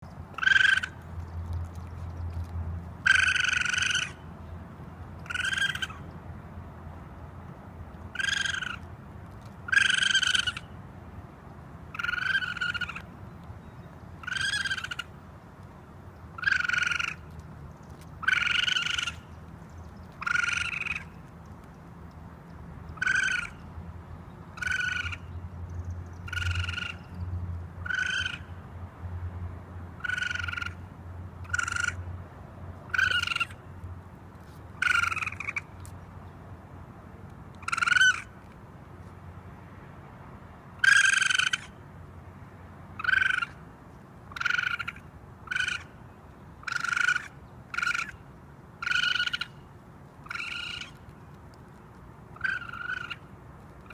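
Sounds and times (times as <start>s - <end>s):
raccoon calling: 0.3s - 1.1s, 3.0s - 4.3s, 5.2s - 6.1s, 8.1s - 8.9s, 9.6s - 10.8s, 11.9s - 13.1s, 13.7s - 15.2s, 16.3s - 17.4s, 18.2s - 19.4s, 20.1s - 21.3s, 23.0s - 23.7s, 24.5s - 25.4s, 26.1s - 27.2s, 27.8s - 28.6s, 30.0s - 32.1s, 32.9s - 33.6s, 34.8s - 35.9s, 37.6s - 38.4s, 40.8s - 41.8s, 43.0s - 43.7s, 44.3s - 46.0s, 46.6s - 51.1s, 52.3s - 53.9s.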